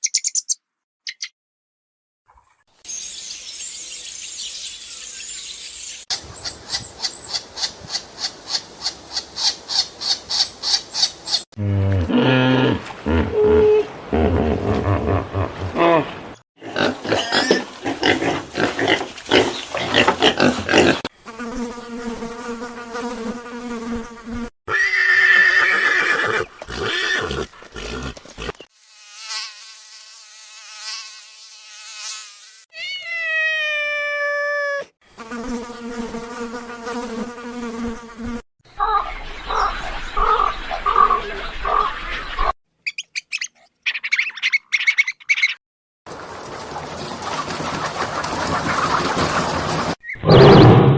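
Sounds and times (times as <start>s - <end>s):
insect wing buzz: 18.0s - 24.5s, 26.6s - 32.7s, 35.1s - 38.4s.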